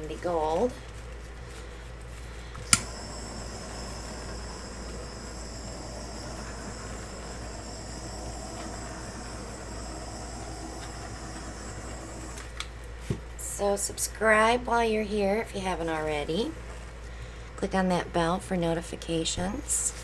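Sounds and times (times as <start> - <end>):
electric air blower running: 2.6 - 12.6
click: 2.6 - 12.7.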